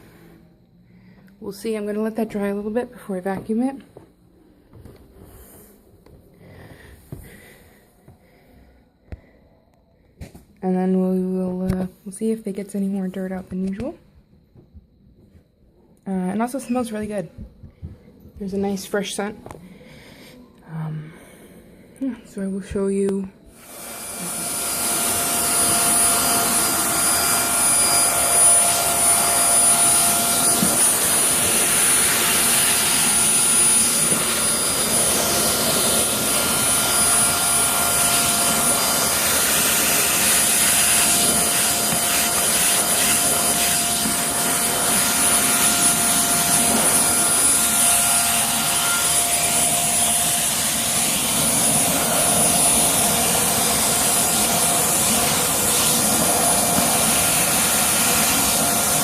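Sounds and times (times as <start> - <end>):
vacuum cleaner running: 0.0 - 9.4, 22.4 - 59.0.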